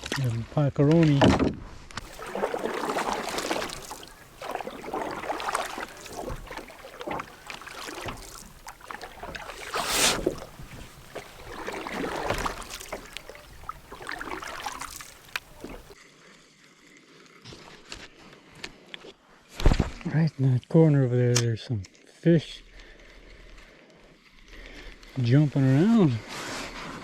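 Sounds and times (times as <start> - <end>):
small knocks against boat: 1.2 - 16.0
water splashing and sloshing: 1.9 - 16.0.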